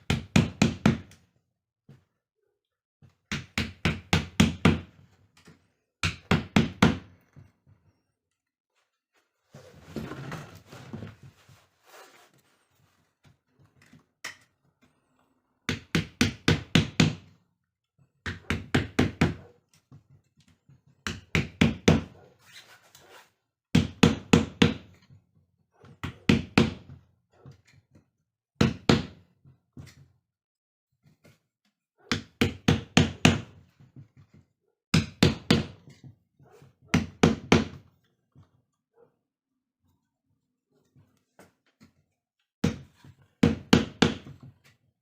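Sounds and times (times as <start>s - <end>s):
rustling scrape: 9.2s - 13.2s, 22.4s - 23.4s.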